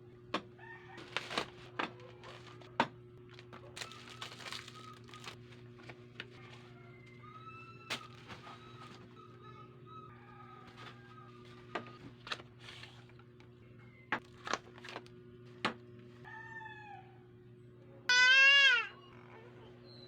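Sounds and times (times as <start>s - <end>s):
animal call rising and falling: 18.1s - 19.0s.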